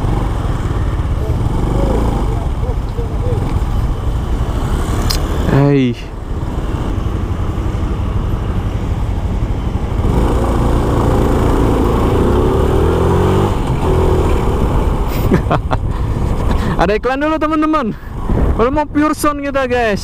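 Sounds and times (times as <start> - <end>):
motorcycle engine running: 0.0 - 15.2.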